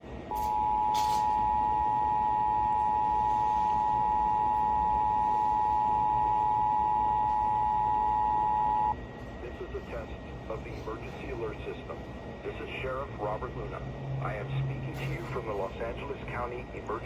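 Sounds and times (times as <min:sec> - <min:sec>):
two-tone alert alarm: 0:00.3 - 0:09.0.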